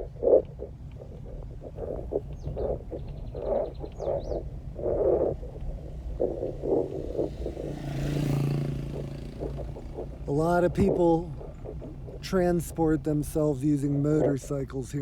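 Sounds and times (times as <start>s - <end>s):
bumps and jolts on rough road: 0.0s - 15.0s
vehicle engine running: 0.0s - 15.0s
vehicle passing close by: 4.7s - 12.2s.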